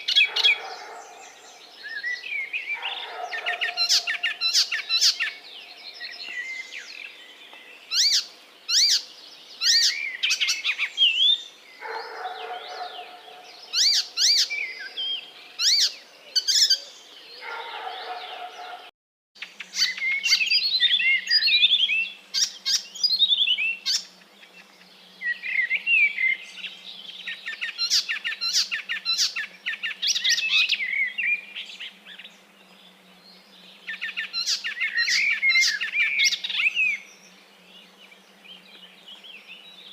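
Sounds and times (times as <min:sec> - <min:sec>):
parrots chirping and calling: 0:00.0 - 0:01.9, 0:02.7 - 0:05.4, 0:11.8 - 0:18.9.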